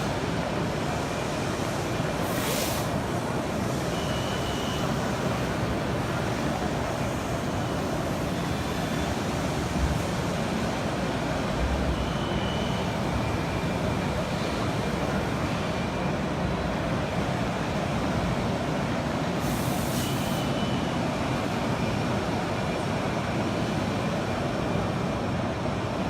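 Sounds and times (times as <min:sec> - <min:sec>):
busy exhibition hall din: 0:00.0 - 0:26.0
faint short high tones: 0:03.9 - 0:05.0.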